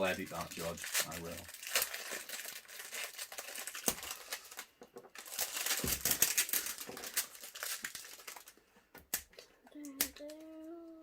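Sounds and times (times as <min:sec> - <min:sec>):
packaging crinkling and rustling: 0:00.0 - 0:08.6.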